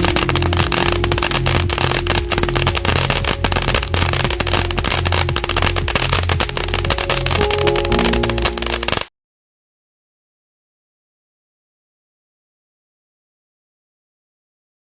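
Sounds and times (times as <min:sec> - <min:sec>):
firework crackling and popping: 0:00.0 - 0:09.1
music with low beat: 0:00.0 - 0:09.1.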